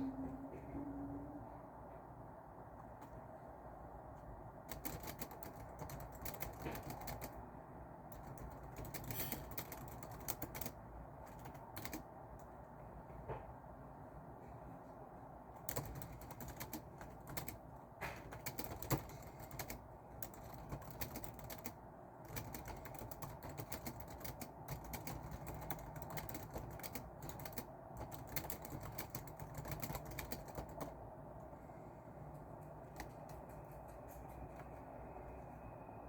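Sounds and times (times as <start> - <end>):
steady low hum: 0.0 - 36.0
computer keyboard typing: 4.6 - 7.4, 8.1 - 12.6, 15.6 - 31.0, 32.8 - 34.8.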